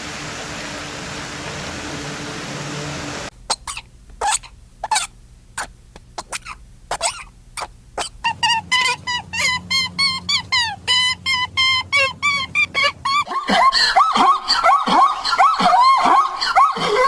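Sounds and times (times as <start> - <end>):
animal breathy bursts: 3.4 - 8.3
high-pitched animal calls: 3.5 - 12.2.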